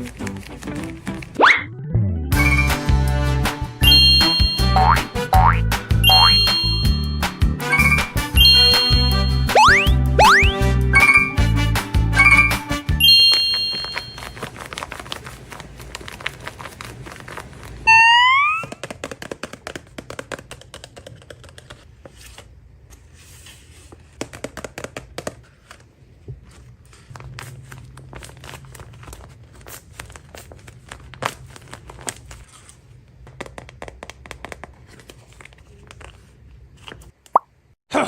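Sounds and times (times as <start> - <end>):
paper crinkling and tearing: 0.0 - 1.4, 13.9 - 17.9, 26.5 - 32.9.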